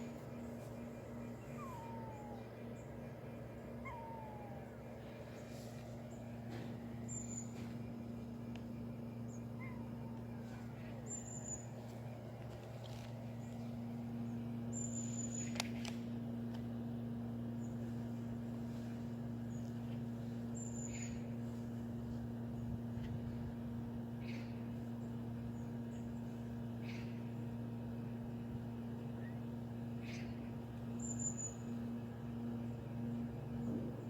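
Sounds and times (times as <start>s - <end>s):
low hum: 0.0s - 16.2s
cat meowing faintly: 1.3s - 2.7s, 3.8s - 5.7s, 9.3s - 11.0s.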